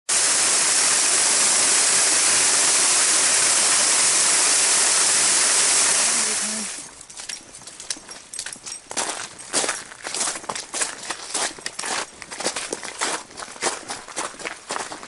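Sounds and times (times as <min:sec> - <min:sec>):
waterfall rushing: 0:00.1 - 0:06.9.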